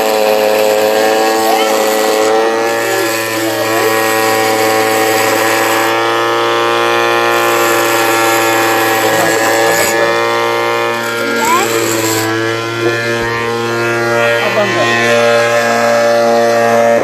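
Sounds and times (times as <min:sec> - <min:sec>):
electric motor whine: 0:00.0 - 0:17.0.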